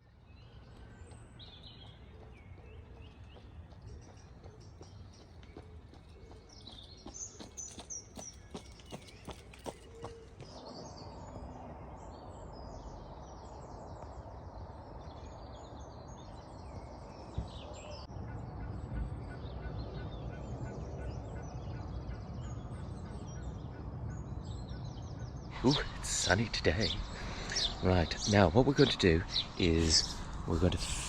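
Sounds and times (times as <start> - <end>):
birds calling and singing: 0.0 - 31.0
steady low background noise: 10.4 - 31.0.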